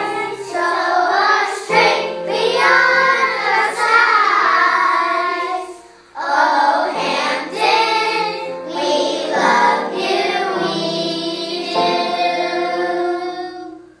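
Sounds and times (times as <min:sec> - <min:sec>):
children singing: 0:00.0 - 0:13.9
musical accompaniment: 0:00.0 - 0:13.9.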